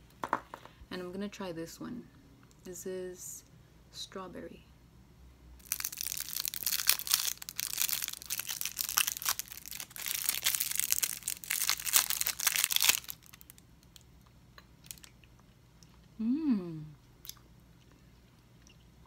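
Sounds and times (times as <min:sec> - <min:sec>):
candy wrapper crinkling and tearing: 0:05.6 - 0:14.1, 0:14.8 - 0:15.2.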